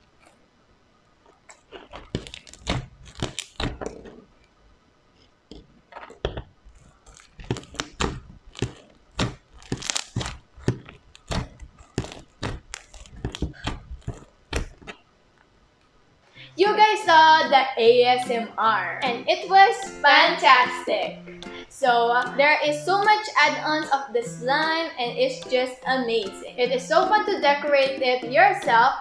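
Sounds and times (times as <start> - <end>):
crunchy slime squeezed by hand: 1.4 - 4.2, 5.6 - 15.0.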